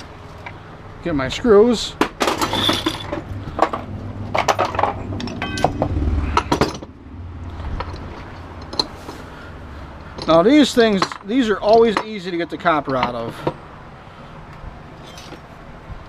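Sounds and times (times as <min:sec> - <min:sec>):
metal parts and screws clinking: 0:02.2 - 0:07.0, 0:07.6 - 0:09.2, 0:10.0 - 0:13.6, 0:15.0 - 0:15.5
low hum: 0:02.4 - 0:10.2.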